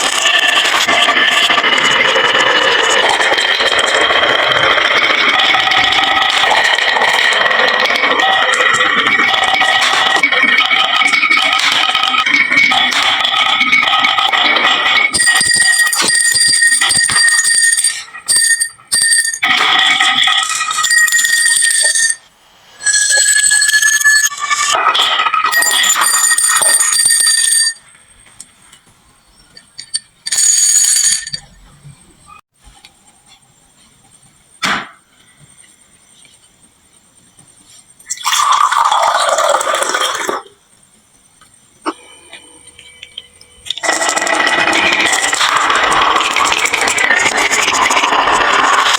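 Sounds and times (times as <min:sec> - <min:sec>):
marbles rattling down a wooden run: 0:00.0 - 0:21.0, 0:43.8 - 0:48.9
high bell-like ringing tones: 0:03.2 - 0:24.8, 0:25.4 - 0:28.4, 0:41.8 - 0:46.8.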